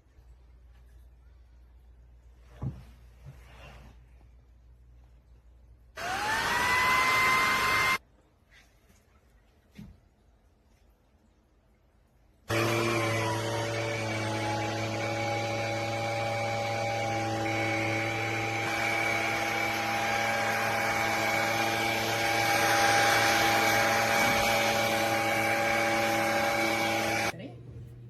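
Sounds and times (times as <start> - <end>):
vacuum cleaner motor whine: 6.0 - 8.0, 12.5 - 27.3.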